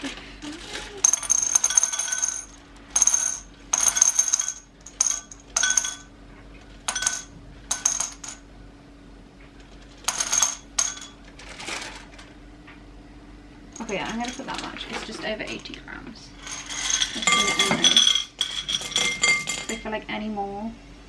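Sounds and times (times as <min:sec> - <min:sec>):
candies clattering into a bowl: 0:01.0 - 0:06.0, 0:13.8 - 0:15.7, 0:16.4 - 0:19.8.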